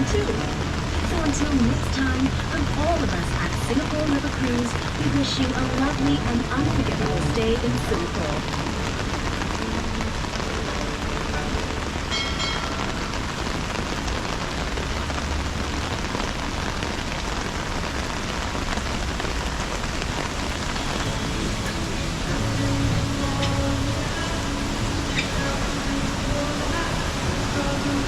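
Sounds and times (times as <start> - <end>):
heavy rain on water and boat: 0.0 - 28.0.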